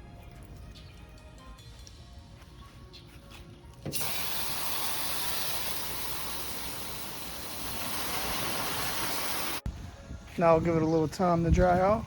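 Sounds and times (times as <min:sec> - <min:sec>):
garden hose spraying water: 0:03.9 - 0:09.6.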